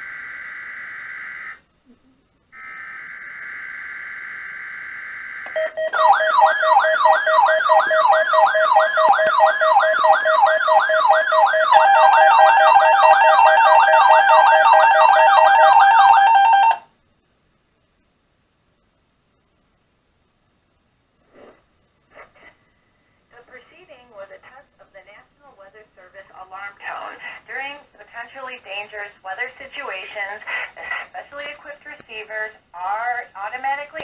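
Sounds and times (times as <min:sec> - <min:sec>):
sweeping alarm tone: 0:02.6 - 0:16.8.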